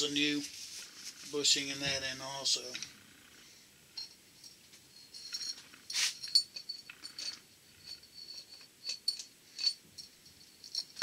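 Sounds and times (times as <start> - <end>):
light metallic clicks and clinks: 4.0 - 11.0.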